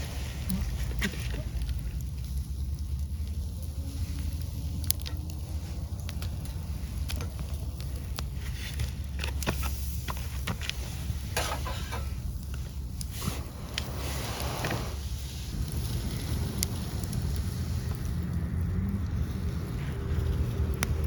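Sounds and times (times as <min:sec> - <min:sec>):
campfire crackling: 0:00.0 - 0:21.0
fire hissing: 0:00.0 - 0:21.0
fire popping: 0:00.0 - 0:21.0
wind on microphone: 0:12.2 - 0:21.0.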